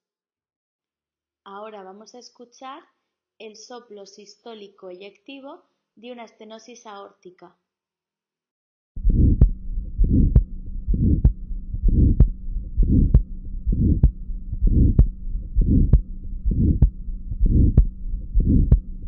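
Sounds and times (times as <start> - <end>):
faint steady hum: 9.0 - 19.0
heart murmur: 9.0 - 19.0
sharp heart clicks: 9.0 - 19.0.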